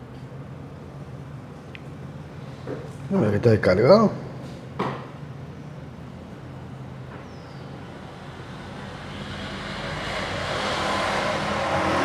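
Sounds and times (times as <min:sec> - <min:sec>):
passing vehicle engine hum: 0:05.9 - 0:12.0
road noise rushing: 0:05.9 - 0:12.0.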